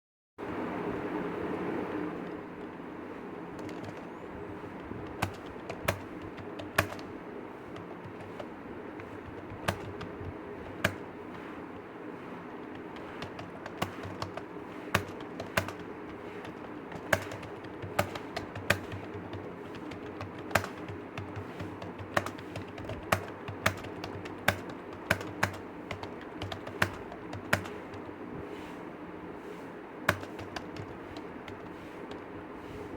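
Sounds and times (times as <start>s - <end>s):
steady low hum: 0.4s - 32.9s
computer keyboard typing: 3.6s - 28.2s, 30.1s - 32.3s.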